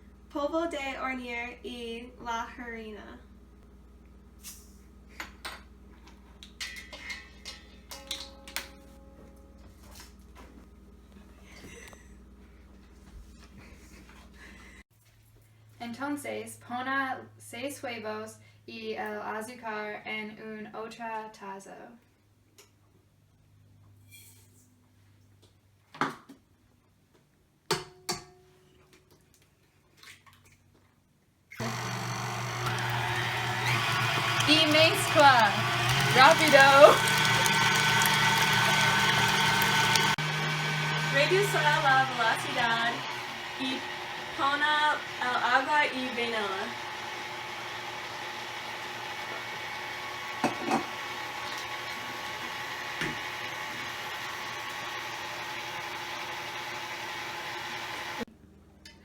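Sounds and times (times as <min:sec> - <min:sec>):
electric mixer humming: 0:31.6 - 0:58.3.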